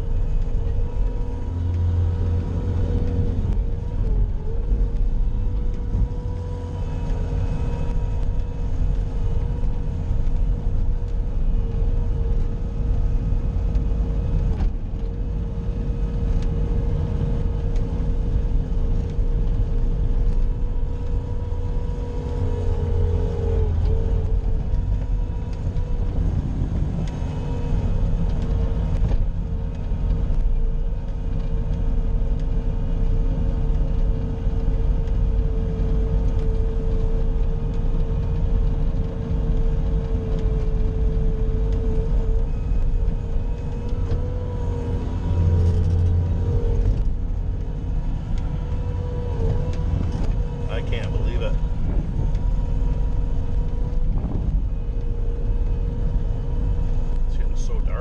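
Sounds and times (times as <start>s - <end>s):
loader engine rumbling: 0.0s - 58.0s
steady whine: 35.1s - 58.0s.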